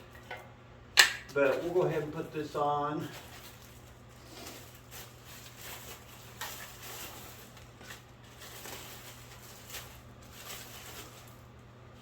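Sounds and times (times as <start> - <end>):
clicks of parts being fitted: 1.0 - 1.4.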